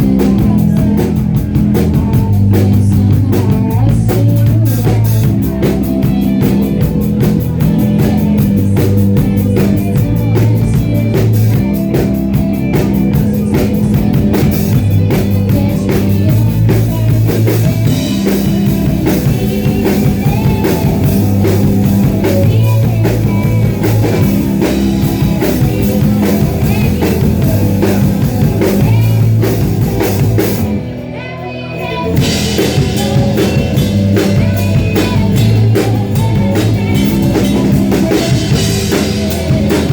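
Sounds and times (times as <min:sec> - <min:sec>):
live rock band playing: 0:00.0 - 0:39.9.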